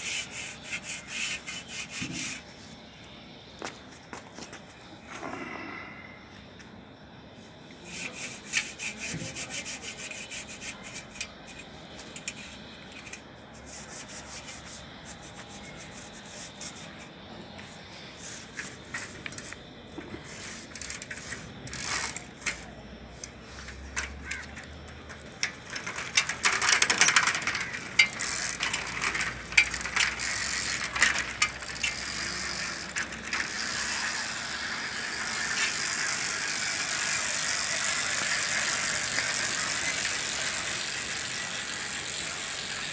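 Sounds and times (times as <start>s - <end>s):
bicycle freewheel ratchet clicking: 0.0s - 2.4s, 7.9s - 17.0s, 18.2s - 19.6s, 20.2s - 42.9s
bicycle parts rattling: 10.5s - 42.9s.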